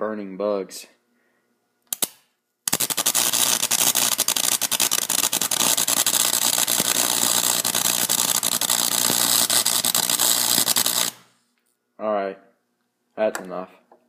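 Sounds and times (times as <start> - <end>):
steady electrical hum: 0.0 - 14.0
electrical arc buzzing crackle: 2.0 - 11.4.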